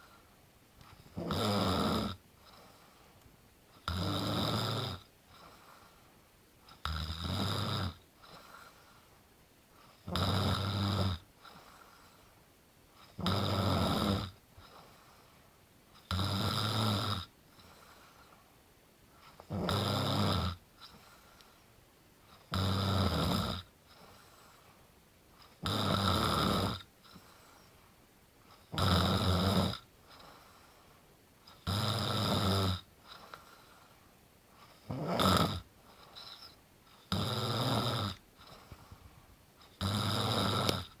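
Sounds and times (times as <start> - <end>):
faint breathing: 0.0 - 1.2, 2.4 - 3.4, 5.2 - 6.3, 8.2 - 10.0, 11.4 - 13.2, 14.5 - 15.7, 17.4 - 19.5, 20.7 - 22.5, 23.7 - 25.6, 27.0 - 28.7, 30.0 - 31.6, 33.0 - 34.9, 35.6 - 37.1, 38.3 - 39.8
loud snoring: 1.1 - 2.2, 3.8 - 5.5, 6.7 - 8.5, 10.0 - 11.6, 13.2 - 14.4, 16.1 - 17.3, 19.4 - 20.6, 22.5 - 23.7, 25.6 - 26.9, 28.7 - 29.9, 31.6 - 33.2, 34.7 - 38.6, 39.8 - 41.0
person snoring: 1.1 - 2.2, 19.5 - 20.6, 34.8 - 35.7, 37.1 - 38.2, 39.8 - 41.0.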